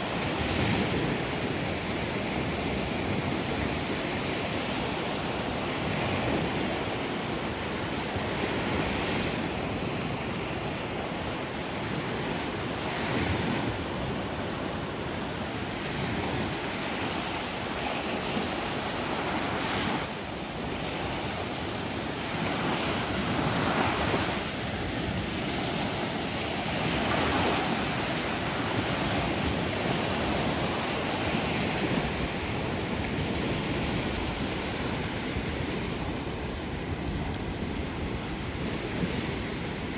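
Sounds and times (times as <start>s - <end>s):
waves breaking: 0.0s - 39.9s.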